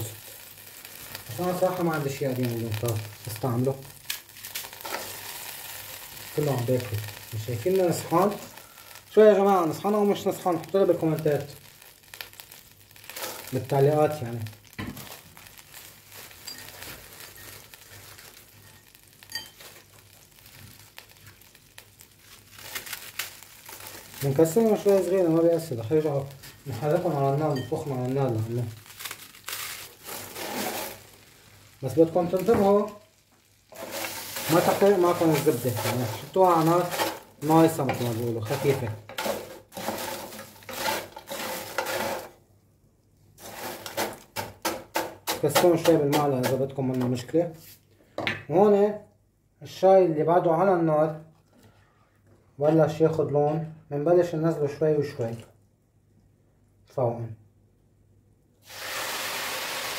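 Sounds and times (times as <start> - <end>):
toast crackling and crunching: 0.0 - 42.5, 43.4 - 47.3
utensil clinking on dish: 19.3 - 19.7
spoon scraping in cooking pot: 33.7 - 42.3.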